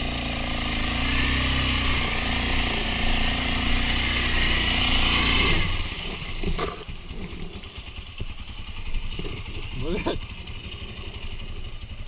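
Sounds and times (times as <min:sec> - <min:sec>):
quad bike engine running: 0:00.0 - 0:12.0.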